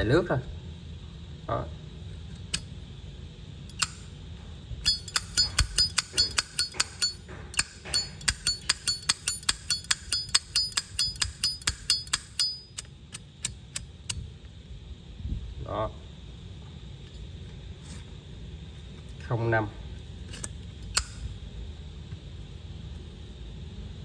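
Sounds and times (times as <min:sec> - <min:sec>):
lighter lid clicking open and shut: 0:03.7 - 0:04.1, 0:20.3 - 0:21.3.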